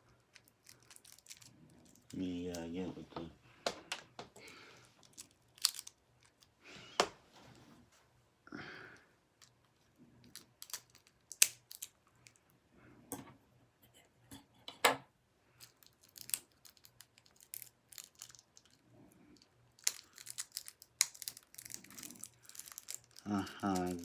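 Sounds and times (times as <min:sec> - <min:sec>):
plastic crinkling: 0:00.1 - 0:03.0, 0:03.8 - 0:06.5, 0:09.4 - 0:12.4, 0:15.6 - 0:24.0
plastic packaging clicks and snaps: 0:00.3 - 0:02.6, 0:05.0 - 0:06.5, 0:10.2 - 0:12.4, 0:15.6 - 0:18.8, 0:19.4 - 0:24.0.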